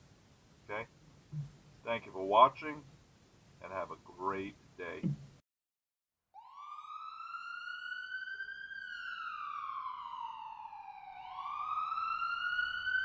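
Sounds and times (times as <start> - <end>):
police siren wailing: 6.4 - 13.0.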